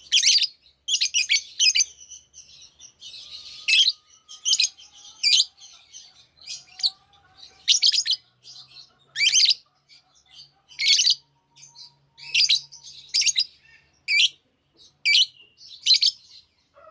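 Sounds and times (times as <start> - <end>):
soft bird twittering: 0.0 - 16.8
birds chirping sharply: 0.0 - 16.9.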